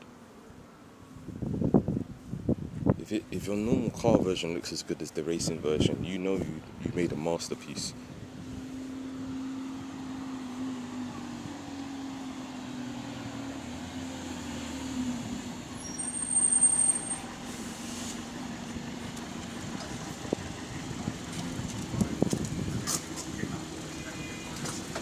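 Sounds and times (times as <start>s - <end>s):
bus engine droning: 6.3s - 25.0s
high squeal: 15.8s - 17.7s.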